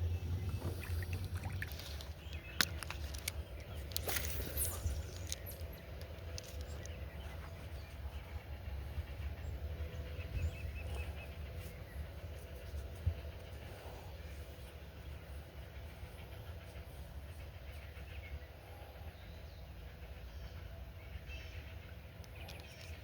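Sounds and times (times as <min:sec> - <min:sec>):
faint hum: 0:00.0 - 0:23.0
low steady rumble: 0:00.0 - 0:23.0
fishing gear clicking on metal boat: 0:00.8 - 0:07.1.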